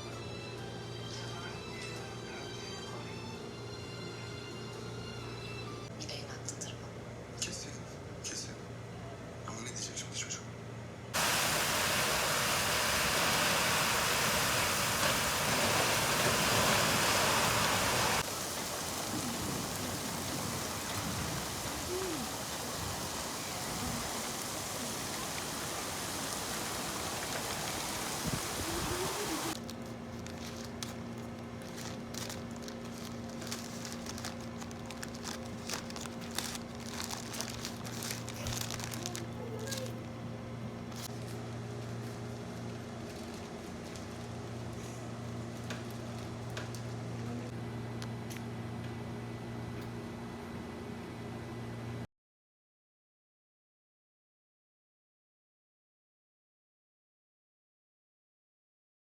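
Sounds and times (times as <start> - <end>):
rain falling: 11.2 - 29.6
small clicks and rustles: 29.6 - 40.0.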